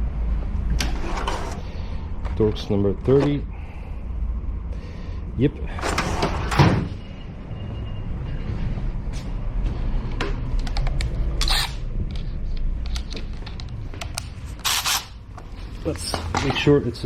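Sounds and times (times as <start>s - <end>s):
steady low rumble: 0.0s - 5.7s, 7.2s - 14.6s.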